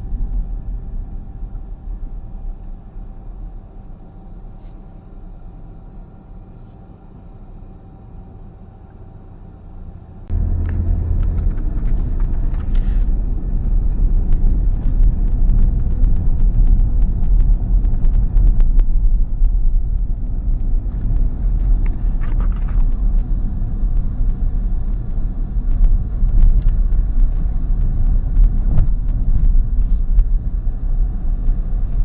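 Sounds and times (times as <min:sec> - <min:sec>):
car road rumble: 0:00.0 - 0:32.0
quick ticks and crackles: 0:10.3 - 0:32.0.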